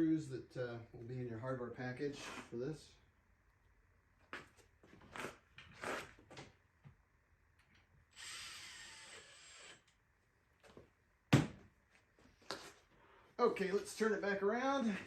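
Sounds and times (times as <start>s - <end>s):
power drill whirring: 8.1s - 10.0s.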